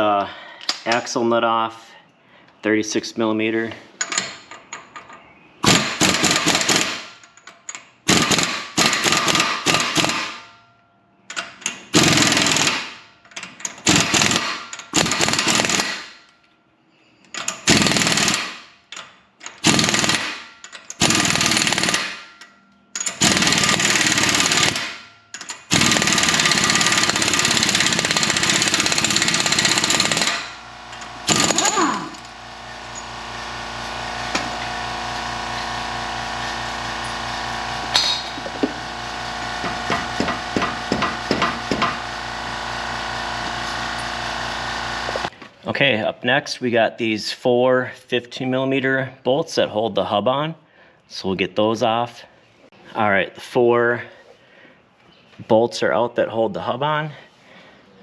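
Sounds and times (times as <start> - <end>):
impact wrench hammering: 5.6 - 10.5, 11.3 - 16.3, 17.4 - 45.3.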